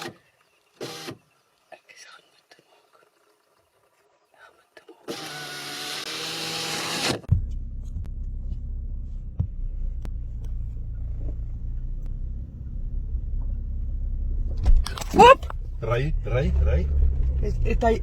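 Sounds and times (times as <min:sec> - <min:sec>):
car engine rumbling: 0:07.4 - 0:18.0.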